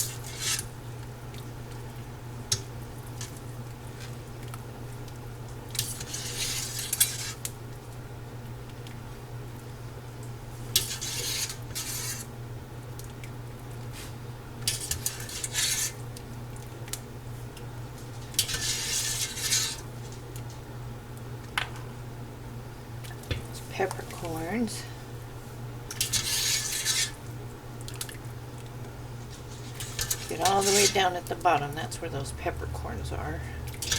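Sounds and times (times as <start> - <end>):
utensil scraping inside a pot: 0.0 - 0.7, 5.8 - 7.5, 10.7 - 12.3, 14.0 - 16.1, 18.1 - 20.2, 25.9 - 27.3, 29.1 - 32.4.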